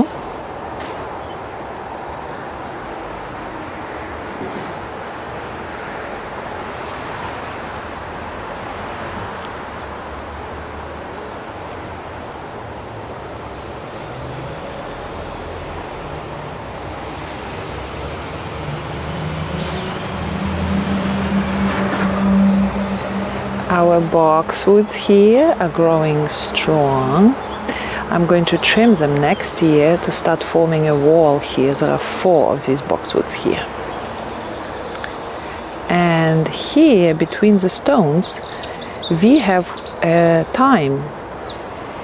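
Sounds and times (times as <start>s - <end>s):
crickets chirping: 0.0s - 42.0s
passing vehicle hum: 14.2s - 42.0s.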